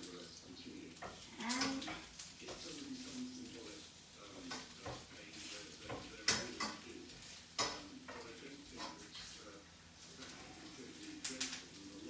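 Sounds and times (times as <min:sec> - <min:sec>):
kitchenware clinking: 0:01.0 - 0:02.8, 0:04.4 - 0:09.4.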